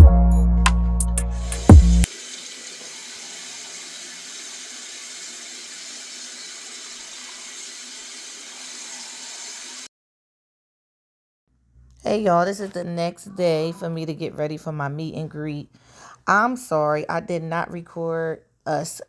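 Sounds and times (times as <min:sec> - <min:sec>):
music: 0:00.0 - 0:02.1
tap water running: 0:01.4 - 0:09.9.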